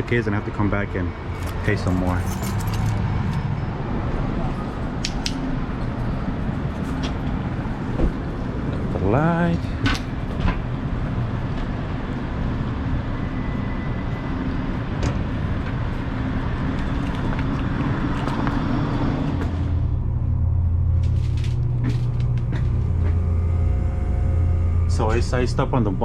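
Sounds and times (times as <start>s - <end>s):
low machine hum: 0.0s - 26.0s
street traffic: 0.0s - 26.0s.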